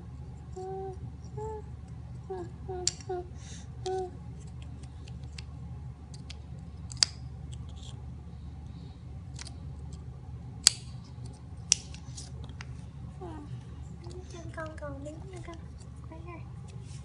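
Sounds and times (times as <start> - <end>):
low room hum: 0.0 - 17.0.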